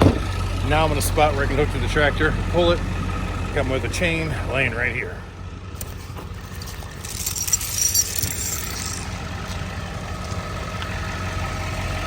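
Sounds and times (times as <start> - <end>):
vehicle engine idling: 0.0 - 12.0
metal chain rattling: 5.8 - 10.6.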